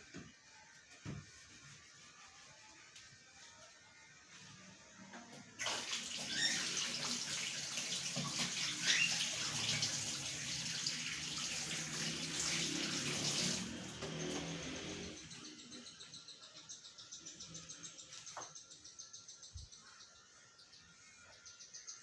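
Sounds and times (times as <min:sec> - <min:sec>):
tap water running into sink: 0:05.6 - 0:14.5.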